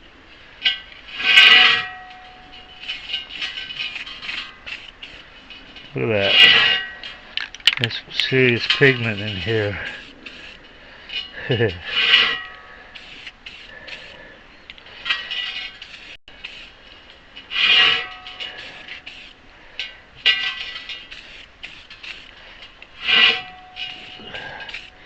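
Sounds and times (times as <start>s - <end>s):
spray paint can hissing: 10.0s - 10.6s, 12.9s - 14.1s, 15.8s - 16.8s, 18.6s - 19.4s, 21.0s - 22.3s.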